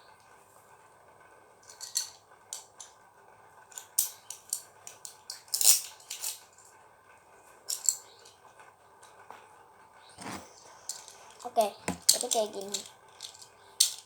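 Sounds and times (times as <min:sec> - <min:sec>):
toy spinning top clicks: 0:10.8 - 0:14.0.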